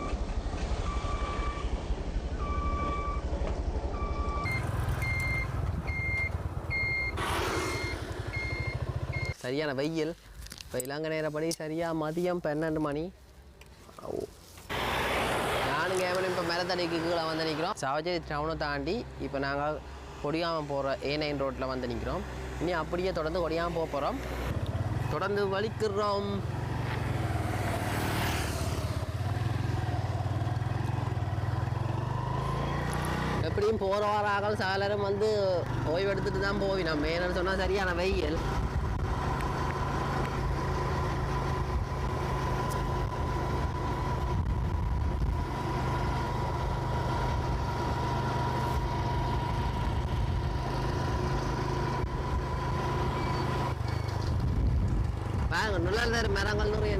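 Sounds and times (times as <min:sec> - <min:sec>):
wind and road noise: 0:00.0 - 0:56.9
motorcycle engine droning: 0:03.2 - 0:09.4
electronic beeper: 0:04.0 - 0:09.4
motorbike engine running: 0:07.8 - 0:09.3.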